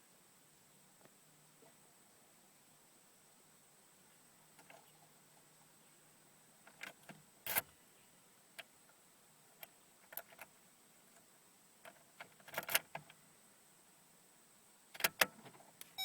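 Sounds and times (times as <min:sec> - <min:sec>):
sharp clicks and light knocks: 0:15.0 - 0:16.0.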